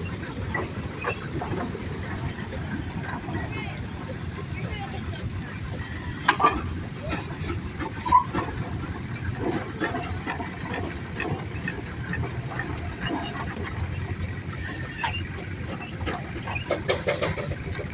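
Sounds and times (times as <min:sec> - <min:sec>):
steam engines rumbling and hissing: 0:00.0 - 0:17.9
faint crowd chatter: 0:02.9 - 0:08.0.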